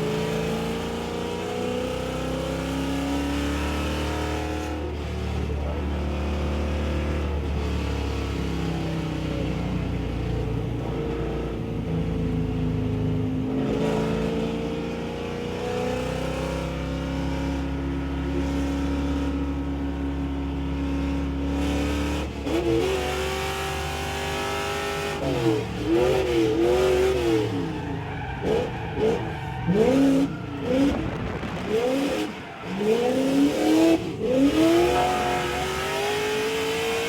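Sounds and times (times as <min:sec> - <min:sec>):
race car engine accelerating: 0:00.0 - 0:37.0
tires squealing: 0:22.4 - 0:37.0.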